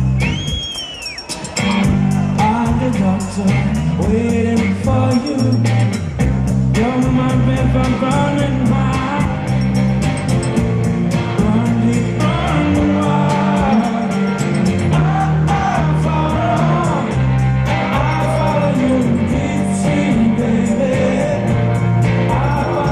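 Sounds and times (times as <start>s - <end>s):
drums beating: 0.0s - 22.9s
live rock band playing: 0.0s - 22.9s
person singing: 2.4s - 5.8s, 11.2s - 22.9s.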